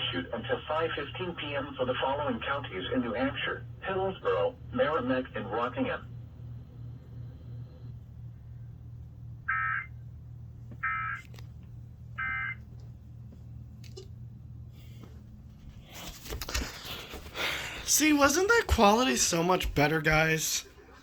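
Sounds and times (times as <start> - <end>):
low steady hum: 0.0 - 21.0
shrill warbling data bursts: 9.5 - 9.9, 10.8 - 11.3.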